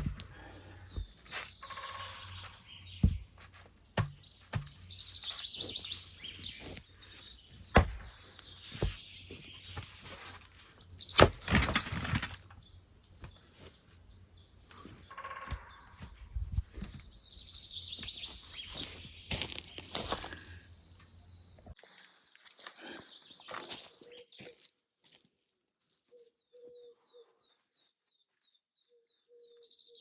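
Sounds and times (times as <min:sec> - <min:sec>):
rustling crunch: 0:00.0 - 0:14.0, 0:18.0 - 0:20.6, 0:21.8 - 0:26.4
birds chirping and trilling: 0:00.0 - 0:21.8, 0:22.5 - 0:24.7, 0:26.0 - 0:30.0.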